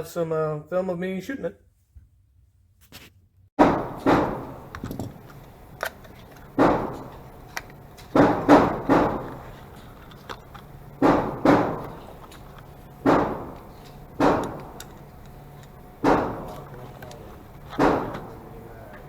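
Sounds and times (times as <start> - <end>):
pistol shots: 3.6 - 4.7, 8.1 - 9.5, 11.0 - 18.5.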